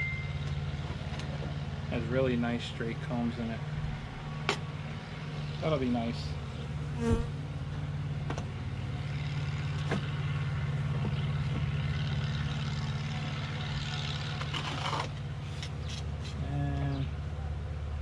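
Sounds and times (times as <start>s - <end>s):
honeybees buzzing: 4.0s - 7.8s.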